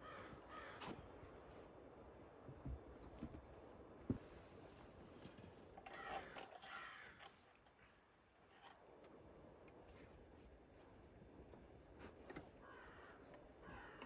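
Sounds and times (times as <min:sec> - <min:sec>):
faint crow cawing: 0:00.0 - 0:01.0, 0:05.9 - 0:07.4, 0:12.6 - 0:14.0.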